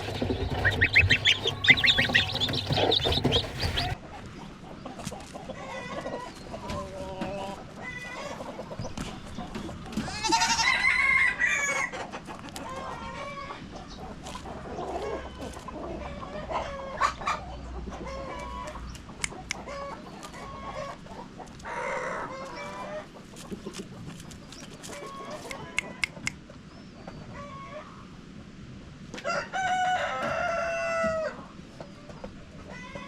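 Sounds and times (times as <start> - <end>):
chickens clucking: 0.0 - 28.5, 29.1 - 33.0
rooster crowing: 10.2 - 11.9, 29.2 - 31.4.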